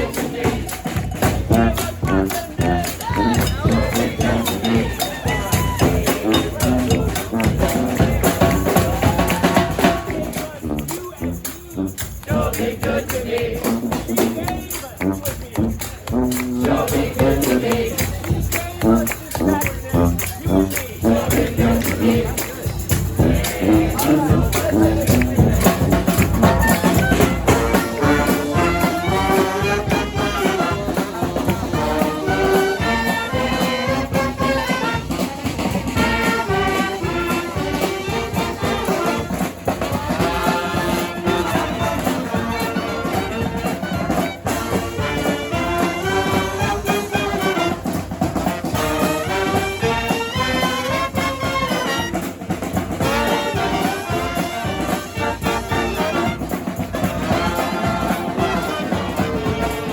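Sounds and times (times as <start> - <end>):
brass band playing: 0.0 - 59.9.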